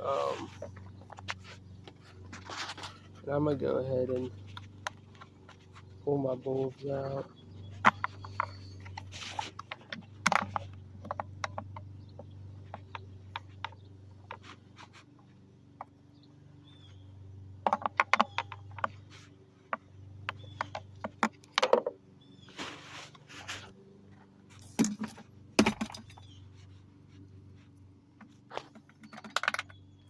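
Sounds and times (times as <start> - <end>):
plastic clicks and rattles: 7.8 - 14.4, 17.6 - 19.0, 20.2 - 22.0, 28.2 - 29.9.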